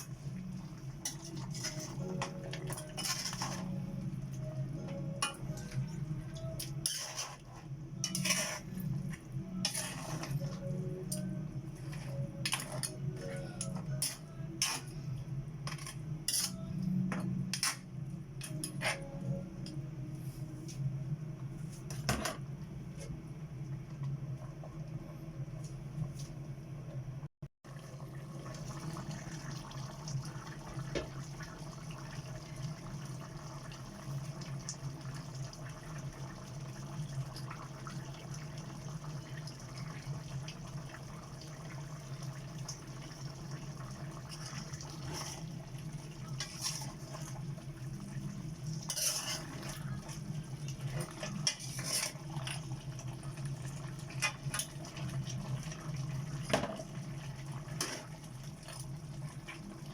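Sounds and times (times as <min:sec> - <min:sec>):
low steady hum: 0:00.0 - 0:59.9
metal utensils scraping a pot: 0:01.0 - 0:03.8, 0:06.6 - 0:08.9, 0:09.6 - 0:10.6, 0:11.9 - 0:15.0, 0:15.7 - 0:16.7, 0:48.8 - 0:49.7, 0:51.3 - 0:52.6.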